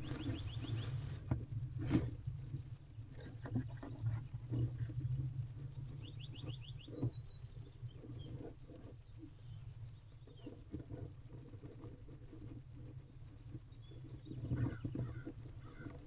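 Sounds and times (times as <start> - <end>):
bird chirping trill: 0.0 - 1.0, 5.9 - 8.0
low hum: 0.0 - 16.0.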